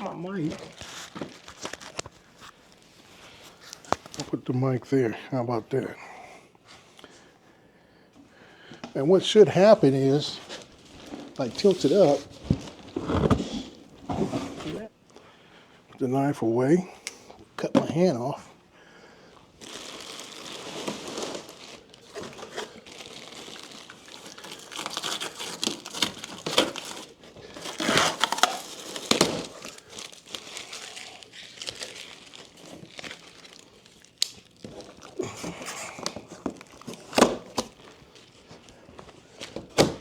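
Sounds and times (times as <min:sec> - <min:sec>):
packaging crinkling and rustling: 0:00.0 - 0:04.4, 0:09.6 - 0:14.9, 0:19.5 - 0:40.0.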